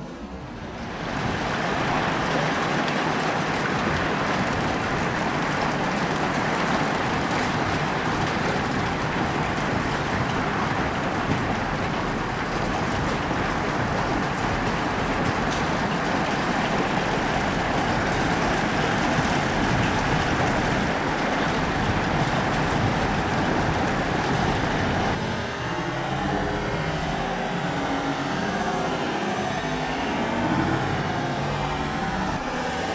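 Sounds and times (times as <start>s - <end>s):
heavy hail clattering: 0.9s - 27.2s.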